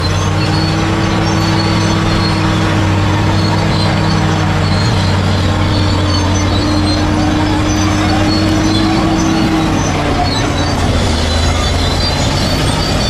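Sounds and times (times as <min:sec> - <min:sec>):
bulldozer diesel engine running: 0:00.0 - 0:13.0.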